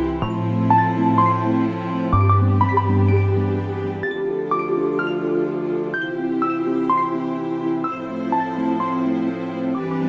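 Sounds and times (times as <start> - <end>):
gentle new-age music: 0.0 - 10.0.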